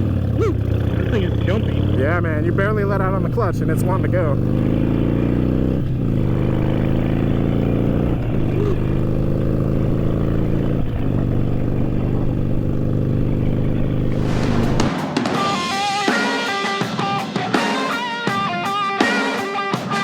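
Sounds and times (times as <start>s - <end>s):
motorcycle engine accelerating: 0.0s - 15.7s.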